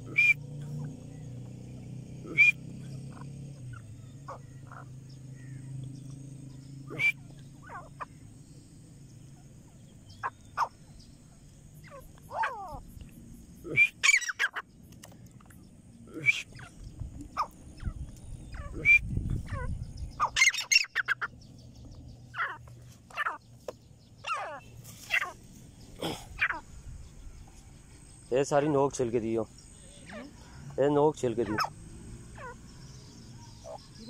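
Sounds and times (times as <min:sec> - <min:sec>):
francolin calling: 0:00.0 - 0:34.0.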